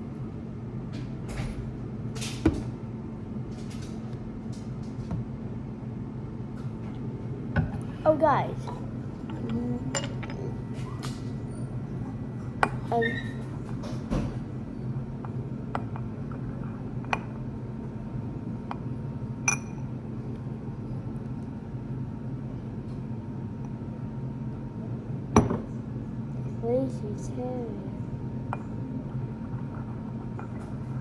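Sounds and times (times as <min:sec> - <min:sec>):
steady low hum: 0:00.0 - 0:31.0.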